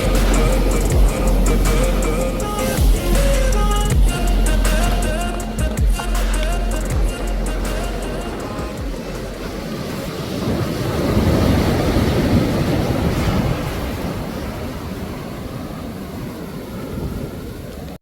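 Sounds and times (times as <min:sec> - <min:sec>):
wave breaking on beach: 0:07.4 - 0:18.0.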